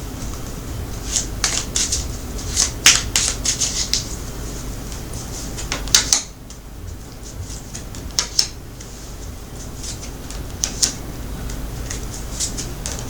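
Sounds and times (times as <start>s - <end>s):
low room hum: 0.0s - 13.0s
cards flicking and snapping: 1.1s - 4.1s, 7.7s - 8.6s, 9.8s - 13.0s.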